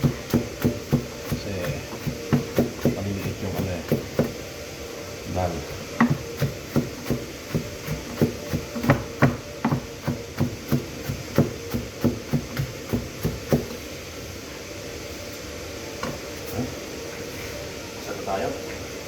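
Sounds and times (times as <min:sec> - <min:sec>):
knife chopping on cutting board: 0:00.0 - 0:04.4, 0:05.9 - 0:13.8.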